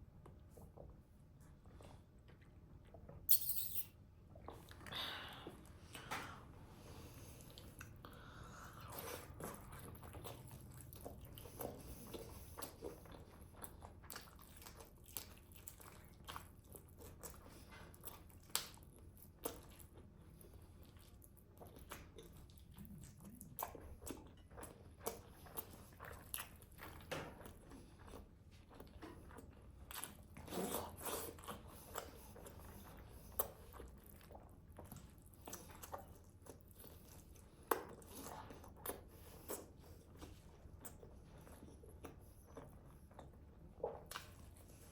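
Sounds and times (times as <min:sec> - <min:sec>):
chewing and biting: 0:08.7 - 0:44.9.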